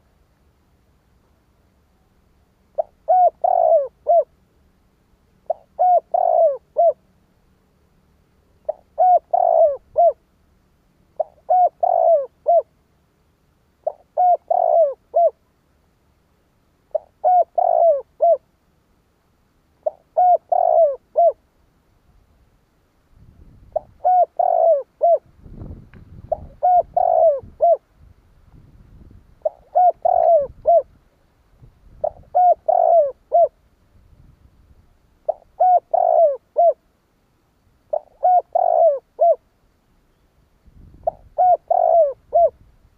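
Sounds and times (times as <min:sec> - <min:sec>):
dove cooing: 0:02.7 - 0:04.4, 0:05.4 - 0:07.0, 0:08.6 - 0:10.2, 0:11.1 - 0:12.7, 0:13.8 - 0:15.4, 0:16.9 - 0:18.5, 0:19.8 - 0:21.4, 0:23.7 - 0:25.3, 0:26.3 - 0:27.8, 0:29.4 - 0:30.9, 0:32.0 - 0:33.6, 0:35.2 - 0:36.8, 0:37.9 - 0:39.5, 0:41.0 - 0:42.6.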